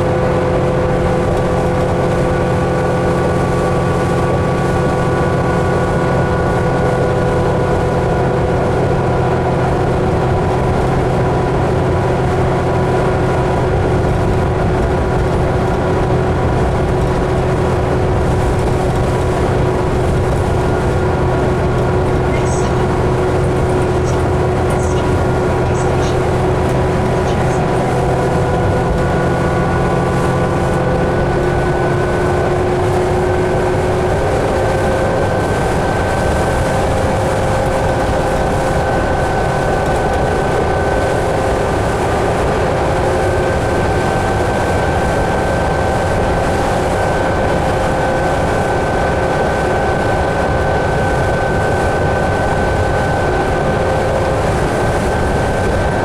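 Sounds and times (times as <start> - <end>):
bus engine drone: 0.0 - 56.0
whining tones: 20.4 - 31.9.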